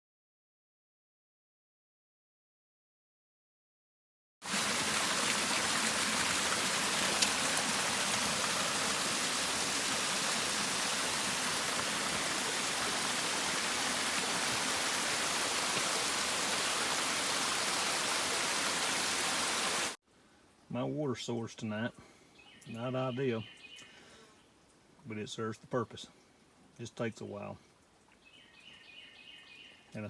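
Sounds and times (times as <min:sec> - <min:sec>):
water flowing over rocks: 0:04.4 - 0:20.0.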